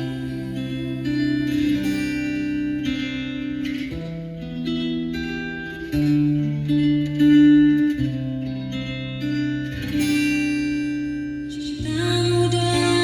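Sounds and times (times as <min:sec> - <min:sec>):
plucked guitar notes: 0:00.0 - 0:13.0.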